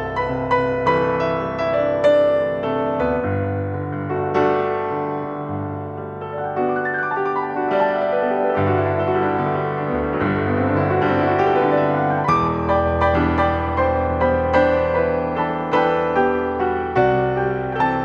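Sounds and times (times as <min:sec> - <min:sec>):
gentle piano piece: 0:00.0 - 0:18.0.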